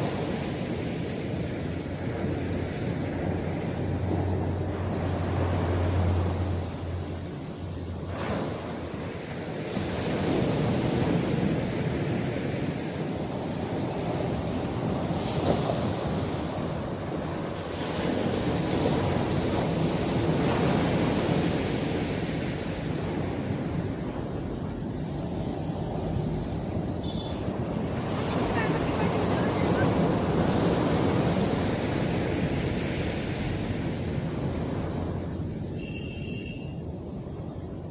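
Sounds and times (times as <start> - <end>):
sea surf breaking on shore: 0.0 - 37.9.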